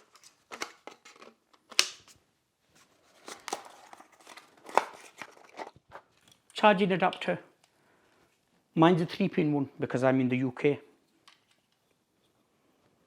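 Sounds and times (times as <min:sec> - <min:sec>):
plastic parts clicking: 0:00.0 - 0:02.1
packaging rustling: 0:00.0 - 0:02.2, 0:02.8 - 0:06.2.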